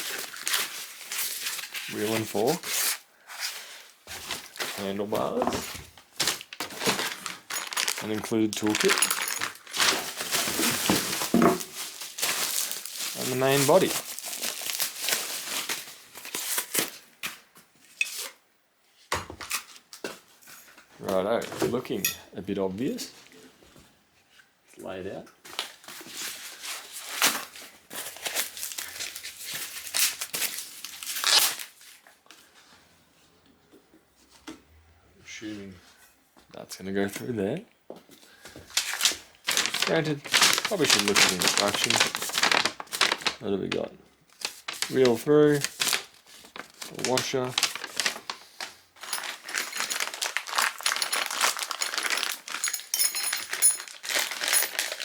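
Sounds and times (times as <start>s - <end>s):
plastic packaging crinkling and tearing: 0.0s - 17.4s, 25.6s - 32.0s, 38.7s - 55.0s.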